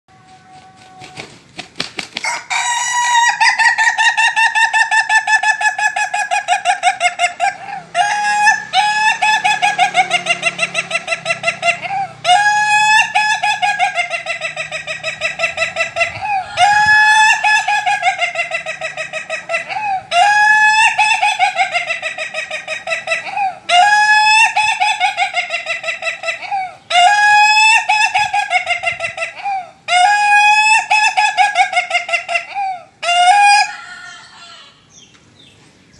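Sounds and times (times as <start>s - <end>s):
rooster crowing like laughter: 2.2s - 34.8s.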